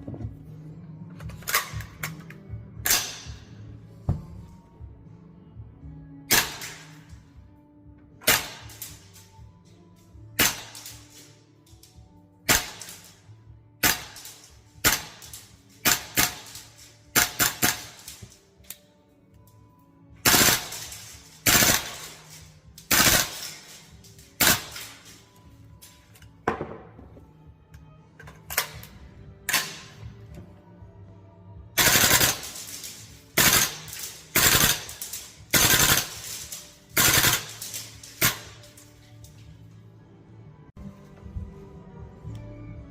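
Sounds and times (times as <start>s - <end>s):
airsoft rifle shots: 20.2s - 25.1s, 31.8s - 38.7s.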